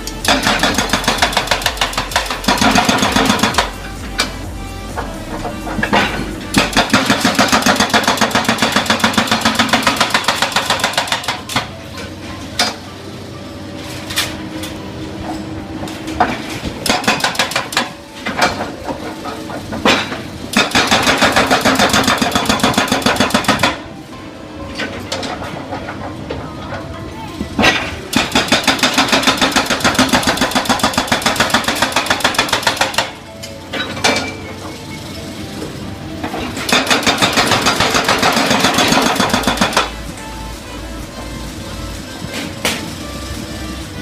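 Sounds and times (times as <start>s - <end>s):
hydraulic hammer pounding: 0.0s - 11.8s, 15.8s - 24.0s, 27.6s - 34.4s, 36.2s - 40.0s
excavator engine running: 0.0s - 44.0s.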